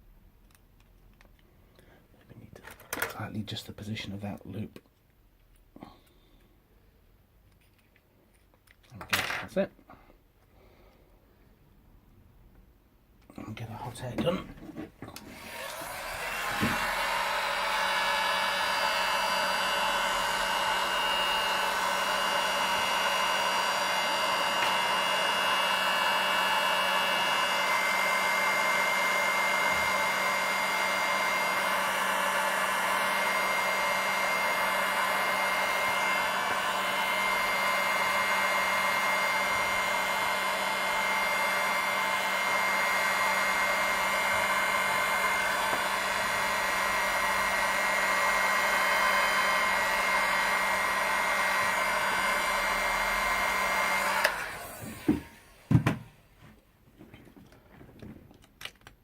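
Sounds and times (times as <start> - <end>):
hot air gun blowing: 15.2 - 56.2.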